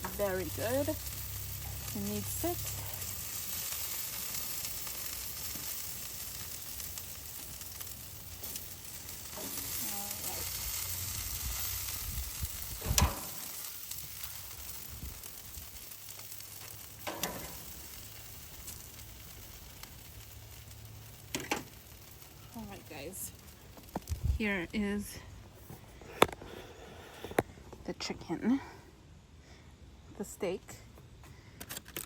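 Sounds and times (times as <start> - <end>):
meat sizzling on a grill: 0.0 - 25.1.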